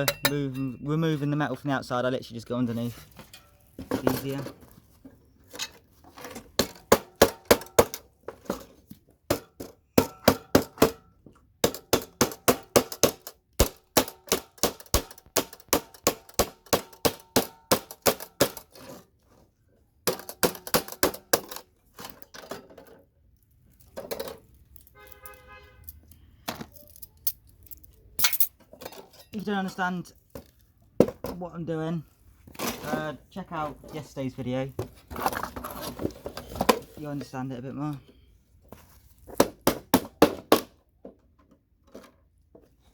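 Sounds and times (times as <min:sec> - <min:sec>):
ringing metal clink: 0:00.0 - 0:01.0.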